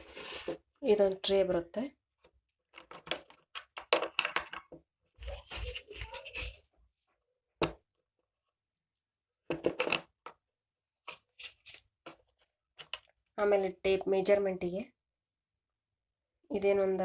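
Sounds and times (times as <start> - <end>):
small items rustling and clattering: 2.2 - 6.7, 9.6 - 10.4, 11.1 - 13.3.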